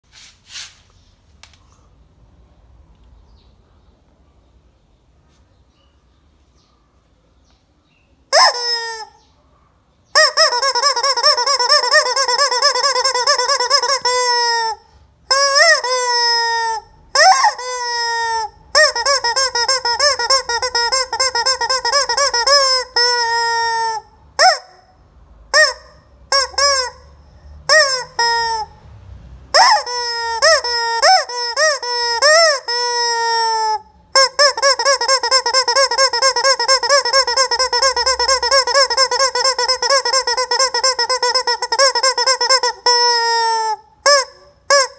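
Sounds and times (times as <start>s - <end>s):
rubber chicken toy squealing: 8.3s - 9.2s, 10.1s - 24.9s, 25.5s - 28.8s, 29.5s - 44.9s.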